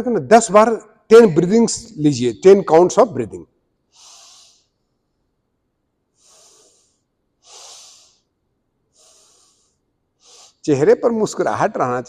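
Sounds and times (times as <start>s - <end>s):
person breathing deeply: 3.9s - 4.8s, 6.1s - 8.3s, 8.9s - 10.7s.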